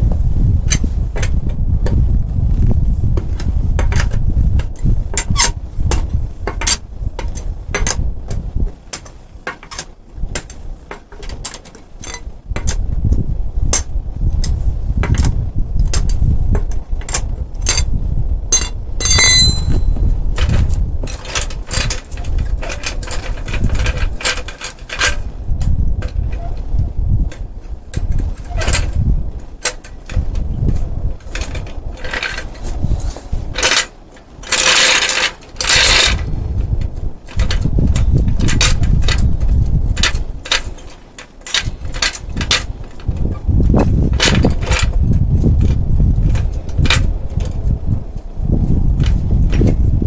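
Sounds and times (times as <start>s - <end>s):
wind rumble on microphone: 0.0s - 50.0s
metallic clicks of hand tools: 8.9s - 12.8s, 18.5s - 20.5s
ringing metal clink: 18.5s - 20.0s.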